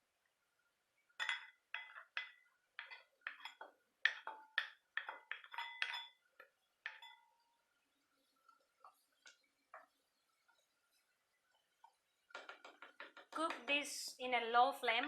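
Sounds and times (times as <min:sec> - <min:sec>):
utensil clinking against dish: 0:01.2 - 0:07.4.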